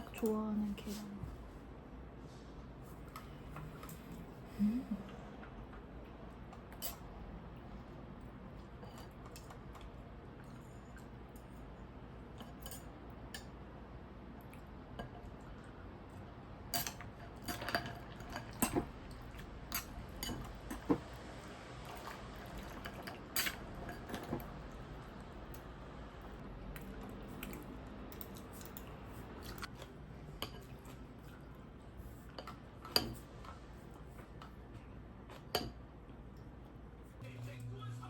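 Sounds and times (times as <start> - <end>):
utensils clinking against dishes: 6.7 - 7.0, 12.4 - 13.5, 16.7 - 21.0, 22.0 - 24.5, 32.3 - 33.3.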